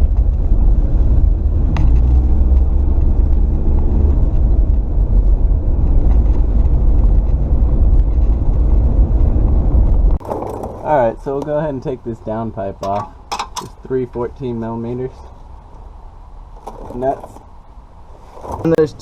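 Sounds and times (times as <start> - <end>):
deep exhaust sound: 0.0 - 10.2
car engine running: 0.0 - 10.8.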